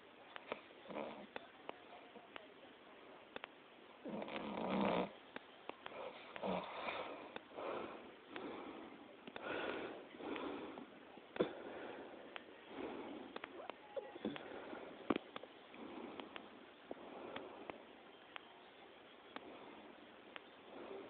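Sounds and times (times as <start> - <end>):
faint clicks: 3.3 - 3.6, 9.2 - 9.5, 20.3 - 20.6.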